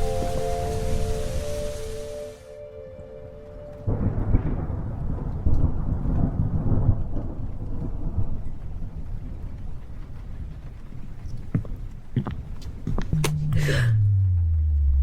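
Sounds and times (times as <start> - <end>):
thunder rumbling: 0.0 - 11.2.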